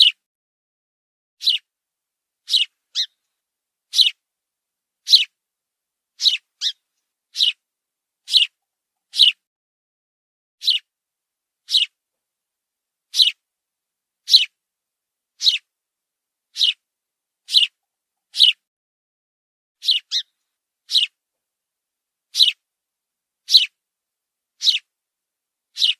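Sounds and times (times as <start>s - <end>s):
sparrow chirping: 0.0s - 0.2s, 1.4s - 1.7s, 2.4s - 3.3s, 3.9s - 4.2s, 5.0s - 5.4s, 6.2s - 7.6s, 8.2s - 9.4s, 10.6s - 10.9s, 11.6s - 12.0s, 13.1s - 13.4s, 14.2s - 14.6s, 15.3s - 15.7s, 16.5s - 16.8s, 17.4s - 18.6s, 19.8s - 21.2s, 22.3s - 22.7s, 23.4s - 23.8s, 24.6s - 24.9s.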